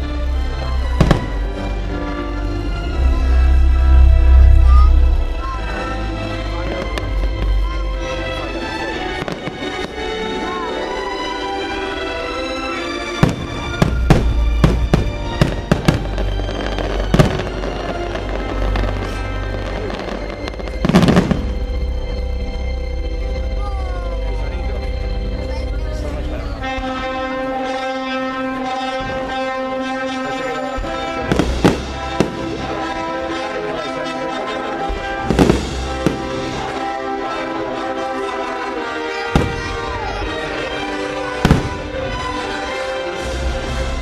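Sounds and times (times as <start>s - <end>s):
orchestral music over loudspeakers: 0.0s - 44.0s
firework bangs: 0.9s - 1.7s, 9.1s - 10.4s, 13.2s - 21.7s, 30.7s - 33.8s, 34.9s - 37.2s, 38.1s - 42.8s
low rumble: 2.5s - 8.5s
sharp firework bangs: 13.2s - 21.4s.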